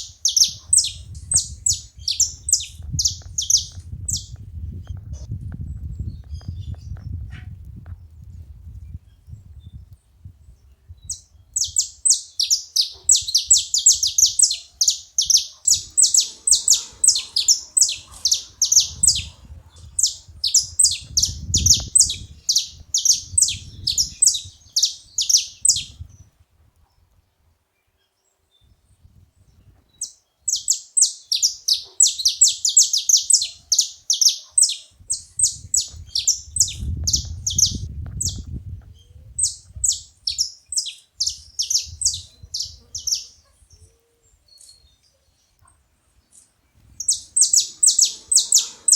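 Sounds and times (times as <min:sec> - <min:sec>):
finches chirping and singing: 0:00.0 - 0:05.3, 0:11.1 - 0:26.0, 0:30.0 - 0:43.9, 0:46.2 - 0:48.9.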